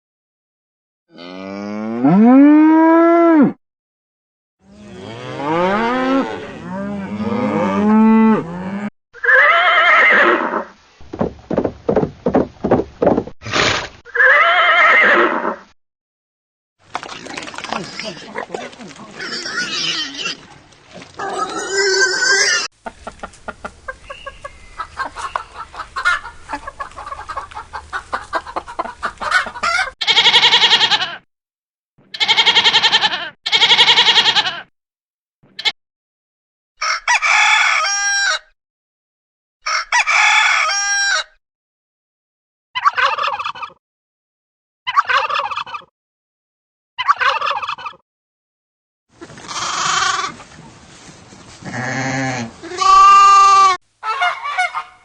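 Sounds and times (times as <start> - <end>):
hen clucking: 21.2 - 31.1, 42.8 - 43.8, 44.9 - 45.9, 47.0 - 48.0, 52.8 - 55.0
rooster crowing: 36.8 - 38.5, 39.6 - 41.4.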